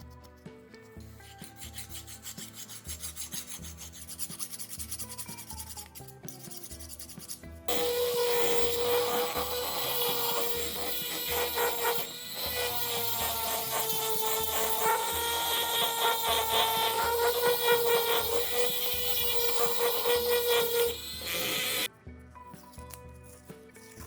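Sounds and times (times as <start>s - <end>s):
power tool grinding: 7.7s - 21.9s.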